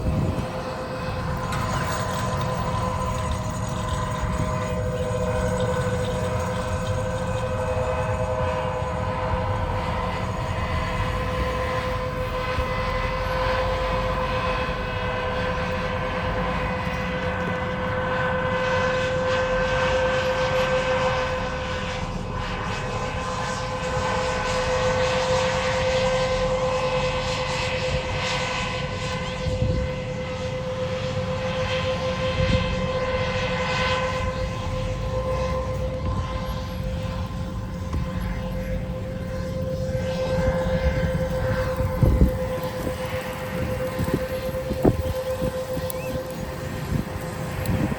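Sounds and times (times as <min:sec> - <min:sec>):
low engine rumble: 0:00.0 - 0:27.2, 0:28.8 - 0:47.9
tractor mechanical whine: 0:00.0 - 0:47.9
tractor engine rumble: 0:34.1 - 0:47.9.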